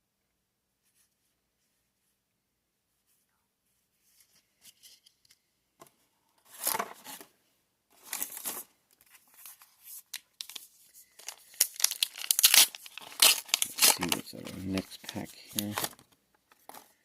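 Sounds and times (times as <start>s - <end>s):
foil wrapper crinkling and tearing: 9.4s - 16.0s.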